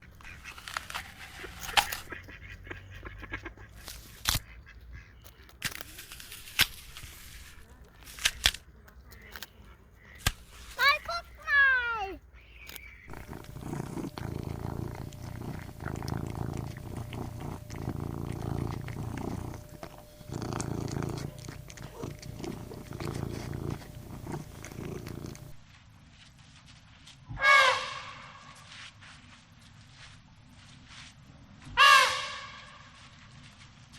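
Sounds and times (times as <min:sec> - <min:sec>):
purring rumble: 0:00.0 - 0:04.4, 0:13.1 - 0:25.6
animal chewing and crunching food: 0:00.0 - 0:27.2.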